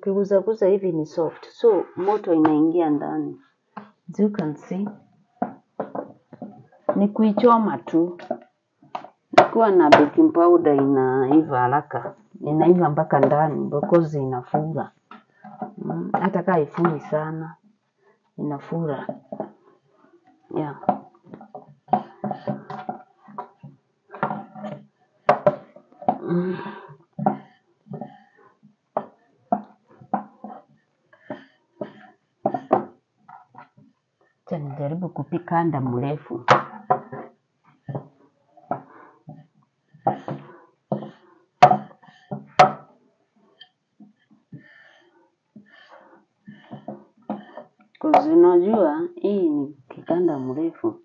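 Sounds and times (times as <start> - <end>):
person speaking: 0.0 - 3.4, 4.1 - 4.9, 6.9 - 8.4, 9.4 - 14.9, 15.7 - 17.5, 18.4 - 19.1, 20.5 - 20.9, 26.2 - 26.9, 34.5 - 36.6, 48.0 - 51.0
dough knocking: 3.8 - 17.3, 20.6 - 26.4, 29.0 - 33.8, 36.4 - 38.1, 38.7 - 42.9, 45.6 - 48.4.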